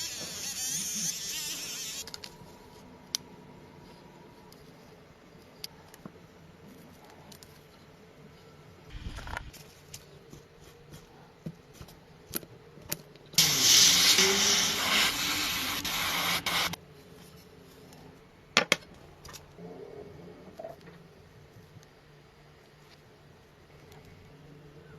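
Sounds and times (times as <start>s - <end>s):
hissing spray: 13.4s - 16.8s.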